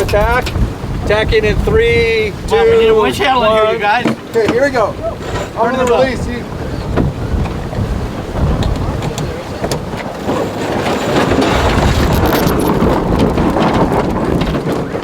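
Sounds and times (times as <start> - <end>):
sail flogging: 0.0 - 15.0
wind buffeting microphone: 0.0 - 15.0
deck gear clicks: 11.2 - 12.9.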